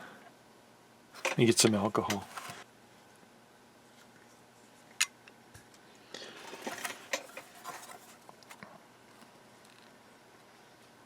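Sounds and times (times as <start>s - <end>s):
rustling and light clattering: 6.4s - 10.0s.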